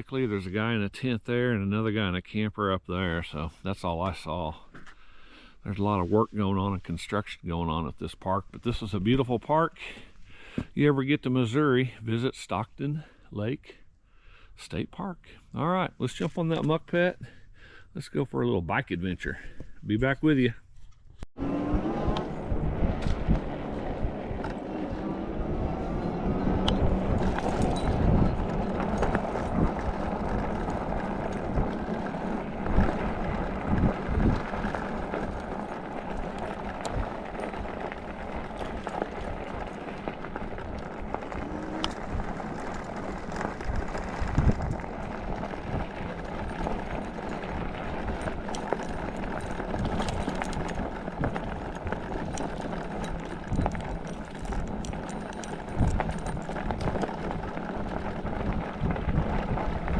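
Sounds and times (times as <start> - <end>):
tyre noise: 21.4 - 59.9
low thumps and bumps: 22.0 - 59.9.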